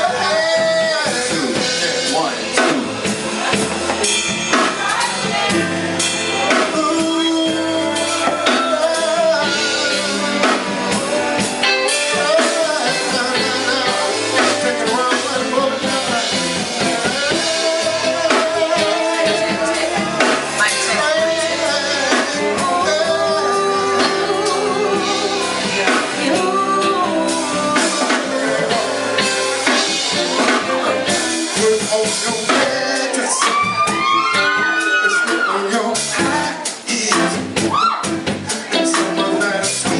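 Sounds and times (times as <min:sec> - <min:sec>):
drum kit: 0:00.0 - 0:39.9
guitar: 0:00.0 - 0:39.9
person singing: 0:00.0 - 0:39.9.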